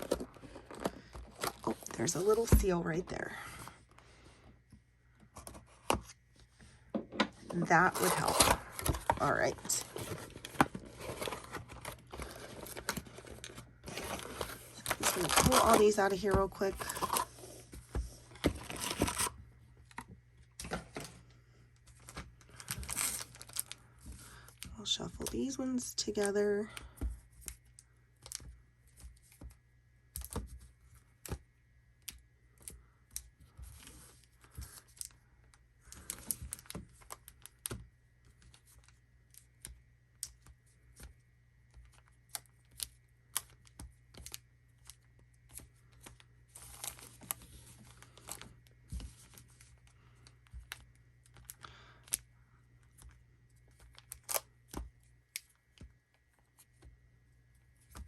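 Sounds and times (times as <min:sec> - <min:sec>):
card packs tapping and clicking: 0:07.5 - 0:17.3
foil wrapper crinkling: 0:07.6 - 0:17.3.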